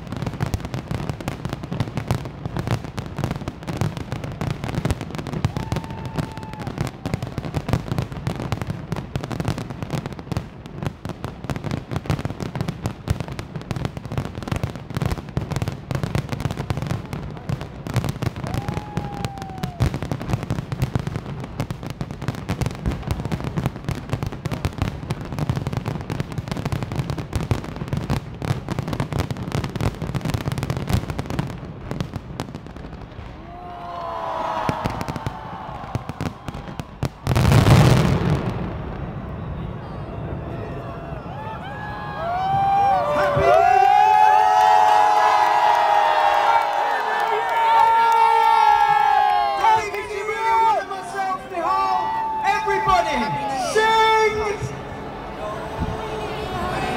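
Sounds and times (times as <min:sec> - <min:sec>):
fireworks bangs and crackles: 0:00.0 - 0:56.9
falling firework whistle: 0:05.3 - 0:07.7, 0:18.2 - 0:20.2, 0:33.2 - 0:47.0.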